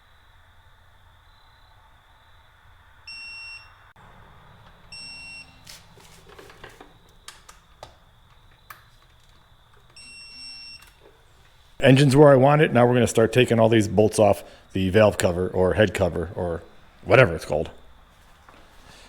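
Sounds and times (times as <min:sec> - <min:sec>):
electronic beeps: 0:04.9 - 0:05.6, 0:10.0 - 0:11.0.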